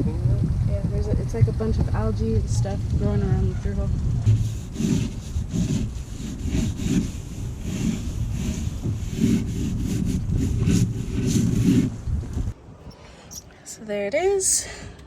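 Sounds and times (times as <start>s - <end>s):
back-and-forth scraping strokes: 4.2s - 12.0s.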